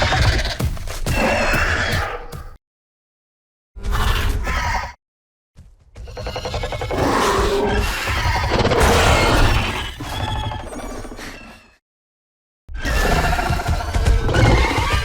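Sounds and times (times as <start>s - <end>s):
dinosaur growling roar: 6.4s - 11.7s, 12.8s - 15.0s.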